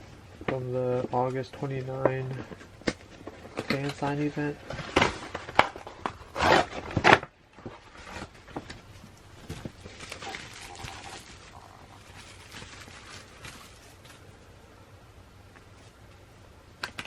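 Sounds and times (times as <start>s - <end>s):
packaging rustling: 1.3s - 14.4s.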